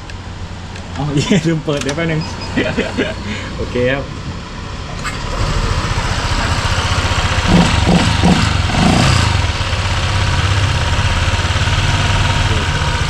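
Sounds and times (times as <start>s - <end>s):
scooter engine idling: 0.0s - 13.0s.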